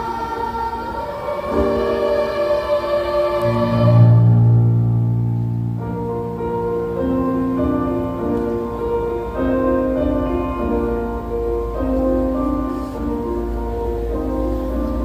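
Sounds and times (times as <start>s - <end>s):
keyboard music: 0.0s - 15.0s.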